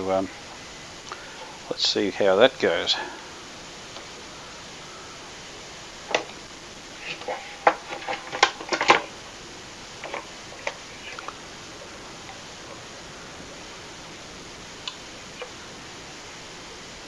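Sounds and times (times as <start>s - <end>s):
knocks clicks and scrapes: 7.0s - 9.1s.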